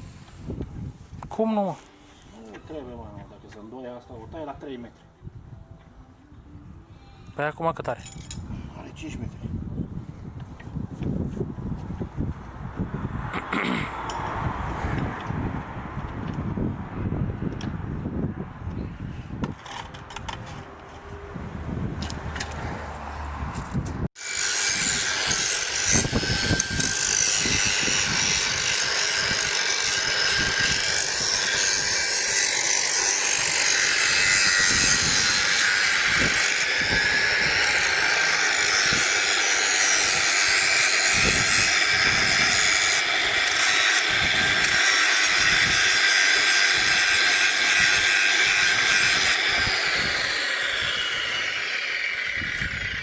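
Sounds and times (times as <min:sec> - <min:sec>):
angle grinder cutting: 0:24.2 - 0:53.0.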